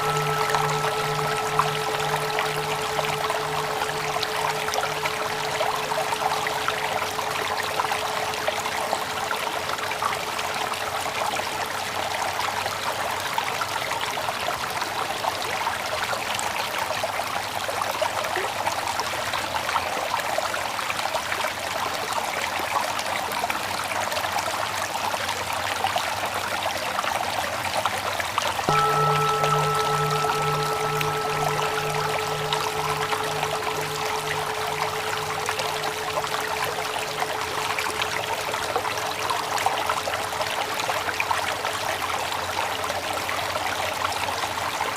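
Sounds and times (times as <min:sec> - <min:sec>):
bell humming: 0:00.0 - 0:10.8, 0:28.7 - 0:41.6
water trickling: 0:00.0 - 0:11.2, 0:28.7 - 0:41.8.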